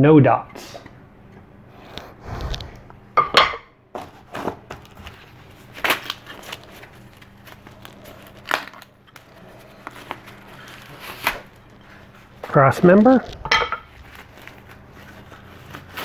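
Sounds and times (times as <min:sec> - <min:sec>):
packaging rustling and crinkling: 0:04.1 - 0:16.0.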